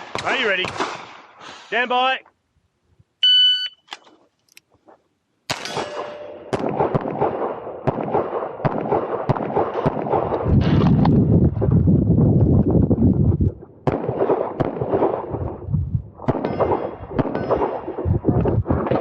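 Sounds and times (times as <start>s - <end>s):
shot timer beep: 3.2s - 3.9s
handgun shots: 5.5s - 10.0s.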